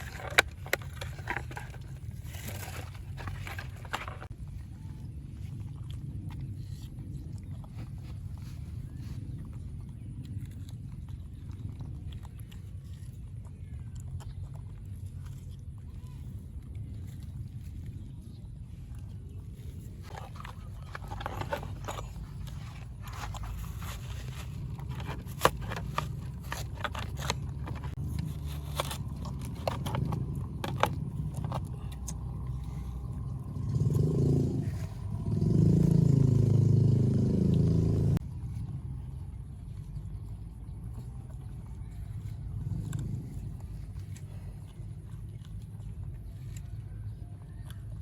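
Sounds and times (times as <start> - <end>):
sharp clicks and scrapes: 0.0 - 4.4, 19.7 - 34.4
vehicle engine running loudly: 20.1 - 44.5.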